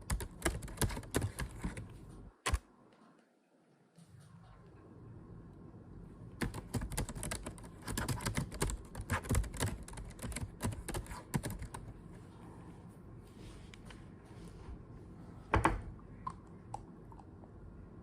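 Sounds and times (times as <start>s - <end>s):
rapid typing on a keyboard: 0.0s - 1.9s, 6.4s - 11.9s
low steady background noise: 0.0s - 18.0s.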